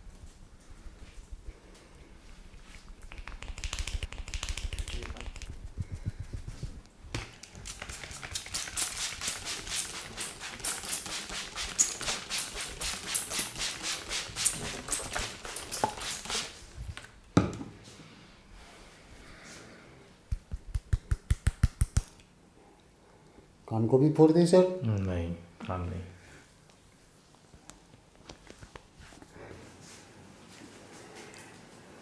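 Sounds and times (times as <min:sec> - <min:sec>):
rhythmic slapping on the body: 0:02.9 - 0:16.5, 0:20.3 - 0:22.2.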